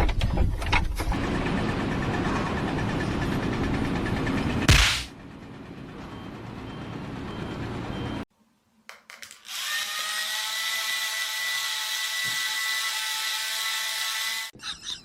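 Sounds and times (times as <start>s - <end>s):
power tool motor whining: 9.4s - 14.5s.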